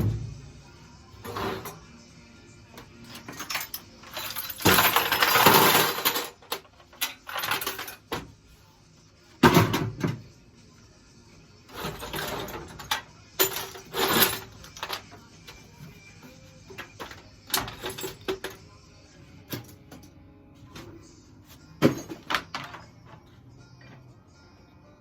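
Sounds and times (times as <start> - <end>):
hardware parts clattering into bins: 0.0 - 0.6, 1.2 - 1.8, 2.8 - 8.4, 9.4 - 10.3, 11.7 - 18.7, 21.8 - 24.0.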